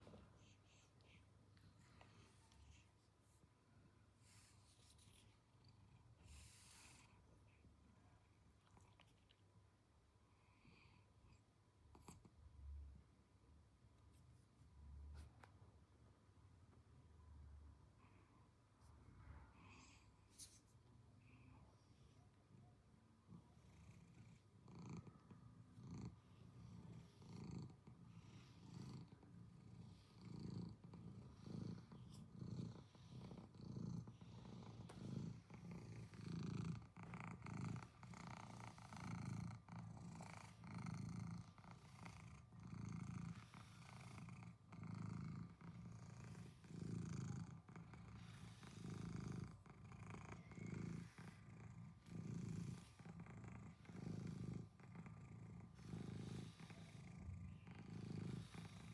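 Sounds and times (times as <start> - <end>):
cat purring: 0.0 - 3.3, 4.2 - 9.4, 21.2 - 58.9.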